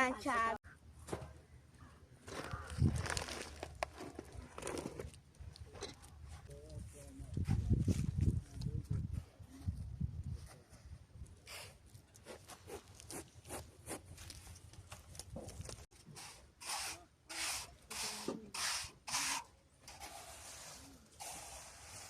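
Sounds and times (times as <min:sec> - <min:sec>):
scraping strokes: 0:16.1 - 0:22.0.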